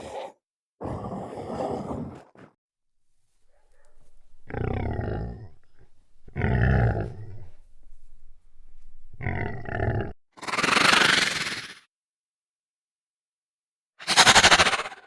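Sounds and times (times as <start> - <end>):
large animal calling: 3.4 - 10.2.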